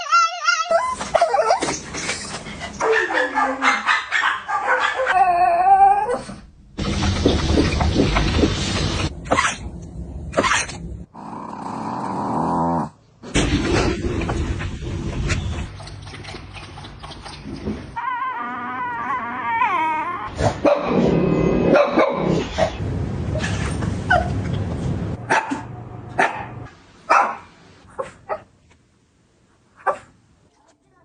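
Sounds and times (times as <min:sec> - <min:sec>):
dog yipping and barking: 0:02.8 - 0:06.3
dog whining: 0:18.0 - 0:20.4.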